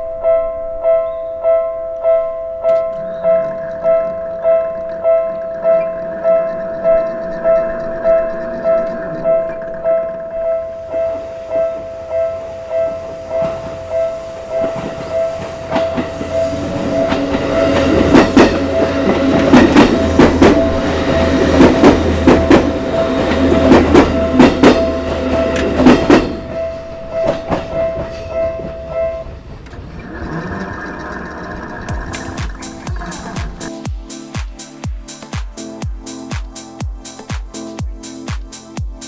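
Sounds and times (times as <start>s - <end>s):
train wheels clattering over rail joints: 13.0s - 33.8s.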